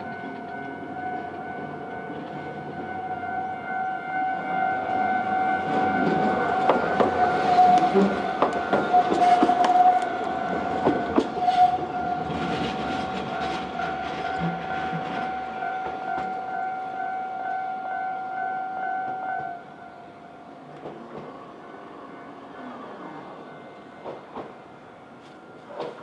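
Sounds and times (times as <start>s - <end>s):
level-crossing alarm ringing: 0.0s - 20.7s
tram rolling over crossing: 0.0s - 26.0s
tram wheel clicks: 6.7s - 11.2s.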